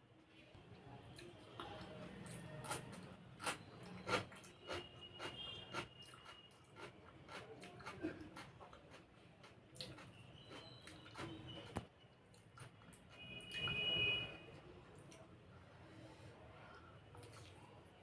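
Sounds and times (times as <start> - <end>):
person chewing food: 2.2 - 11.7, 12.3 - 13.7.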